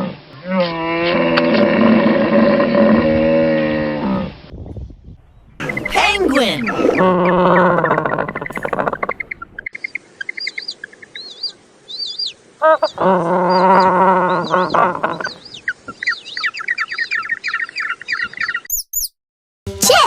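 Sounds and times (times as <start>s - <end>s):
birds chirping and twittering: 4.5s - 19.1s
penguin braying: 5.6s - 9.6s, 12.6s - 15.6s.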